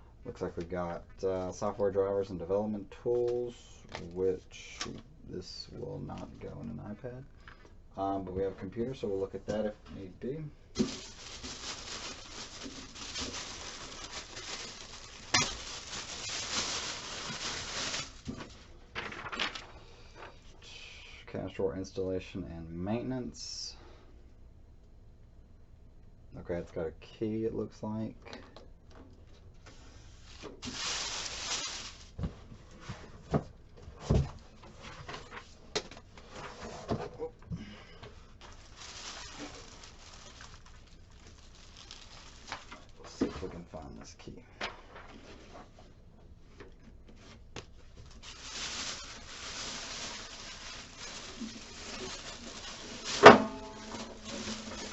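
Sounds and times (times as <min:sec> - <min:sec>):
packaging rustling and crinkling: 0:10.7 - 0:19.7, 0:29.2 - 0:33.4, 0:38.1 - 0:43.6, 0:46.6 - 0:54.9.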